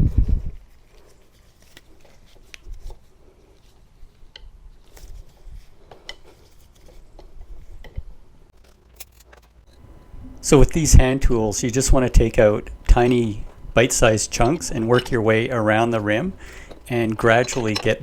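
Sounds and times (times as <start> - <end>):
faint tool clicks and knocks: 1.6 - 8.1, 12.7 - 18.0.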